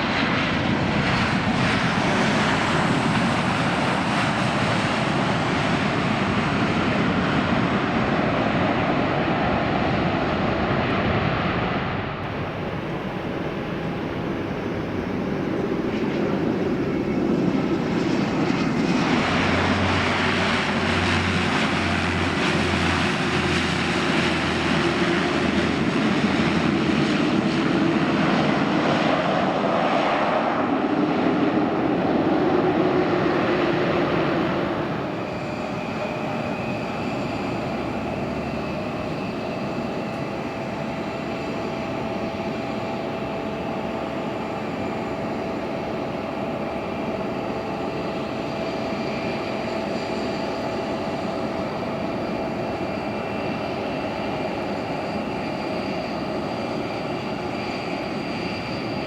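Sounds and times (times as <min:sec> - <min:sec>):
airplane engines passing: 0:00.0 - 0:59.0.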